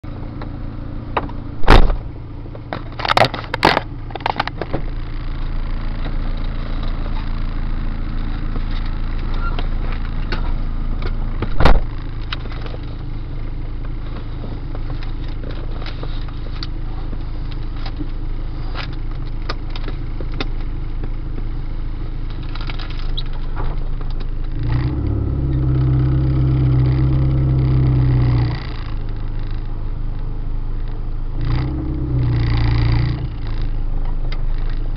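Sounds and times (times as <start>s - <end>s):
car engine and road noise: 0.0s - 34.9s
low droning hum from braking: 0.0s - 34.9s
sharp knocks: 1.2s - 2.1s.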